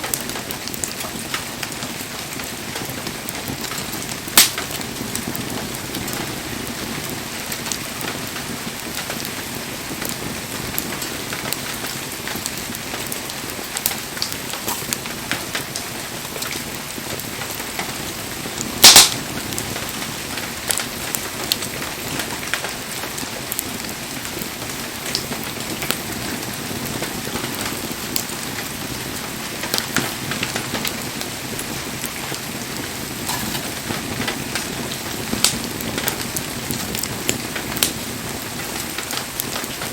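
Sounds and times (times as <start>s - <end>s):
fire crackles and pop: 0.0s - 39.9s
wood fire hissing: 0.0s - 39.9s.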